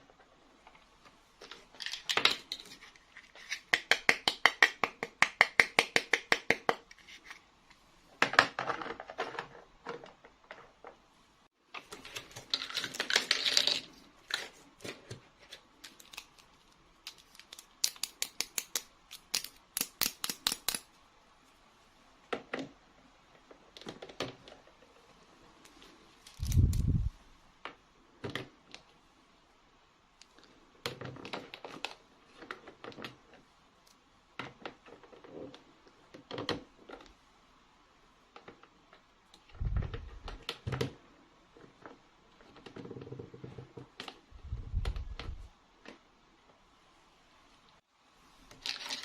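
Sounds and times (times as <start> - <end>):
plastic toy pieces clicking: 17.1 - 20.9.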